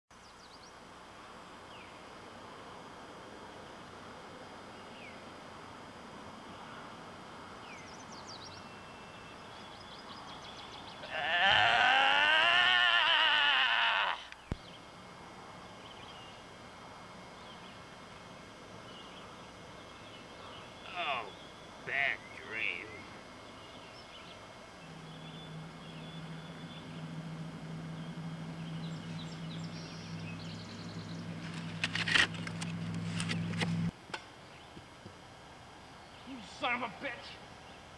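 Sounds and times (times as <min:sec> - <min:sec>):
steady low hum: 0:00.1 - 0:37.9
quavering bleat-like cry: 0:11.0 - 0:14.4
bird chirps: 0:18.8 - 0:31.6.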